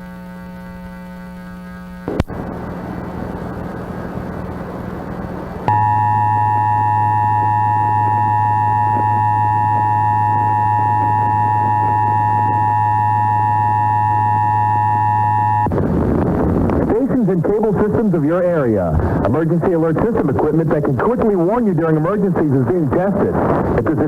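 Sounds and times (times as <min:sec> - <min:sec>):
low hum: 0:00.0 - 0:24.0
two-tone alert signal: 0:05.7 - 0:15.7.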